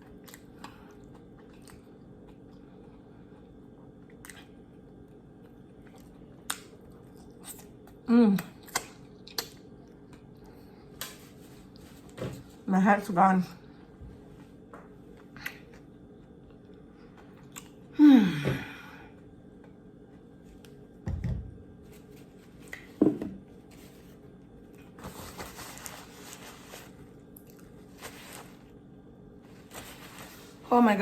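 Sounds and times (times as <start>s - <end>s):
chewing and crunching food: 0.0s - 12.6s, 14.8s - 17.9s, 23.8s - 28.8s
faint steady hum: 0.0s - 31.0s.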